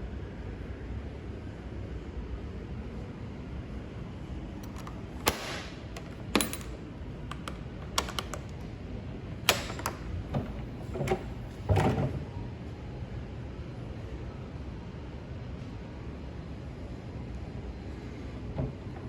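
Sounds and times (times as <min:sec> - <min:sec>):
sharp clicks and knocks: 0:04.6 - 0:08.6, 0:09.4 - 0:11.9.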